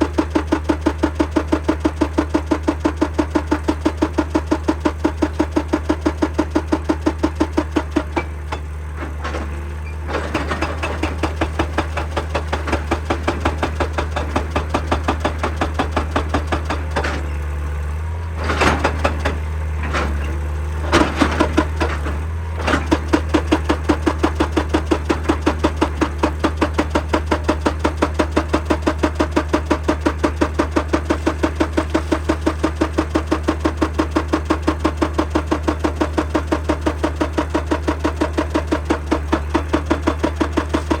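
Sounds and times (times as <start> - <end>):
excavator engine drone: 0.0 - 41.0
hydraulic rock breaker hammering: 0.0 - 41.0.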